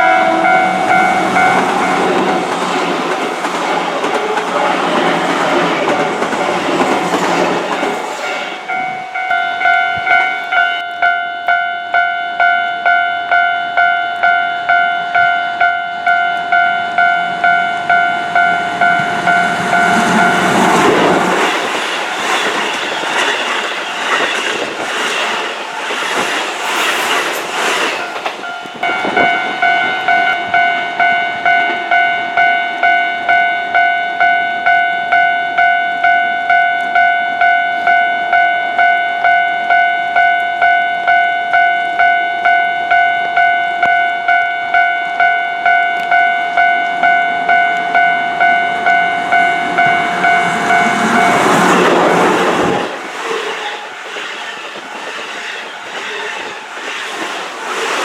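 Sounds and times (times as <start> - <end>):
level crossing bell ringing: 0.0 - 3.3, 8.5 - 21.1, 28.4 - 52.0
train wheels clattering: 19.0 - 30.0, 49.6 - 58.0.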